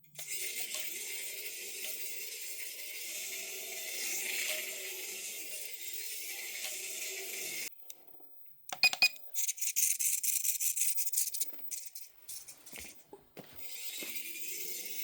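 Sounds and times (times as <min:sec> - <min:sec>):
tiny electric motor buzzing: 0:00.2 - 0:07.7, 0:13.6 - 0:15.0.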